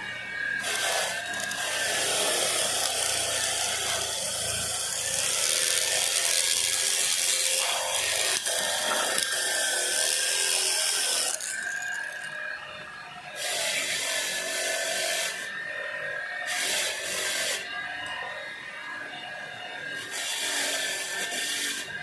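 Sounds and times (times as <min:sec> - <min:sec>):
tool rasping on metal: 0:00.6 - 0:12.3.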